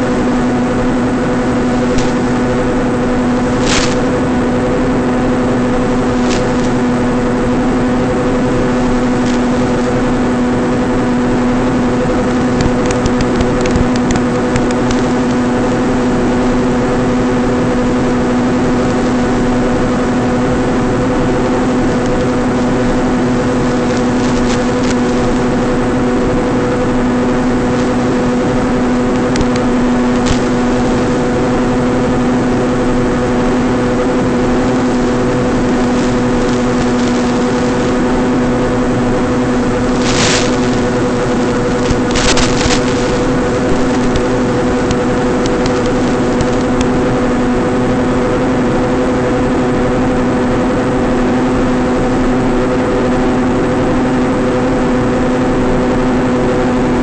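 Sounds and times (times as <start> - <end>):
electric motor and propeller droning: 0.0 - 57.0
faint crackles: 1.8 - 2.5, 3.4 - 4.3, 5.9 - 7.4, 12.2 - 15.4, 21.8 - 25.8, 27.6 - 31.5, 34.1 - 47.0.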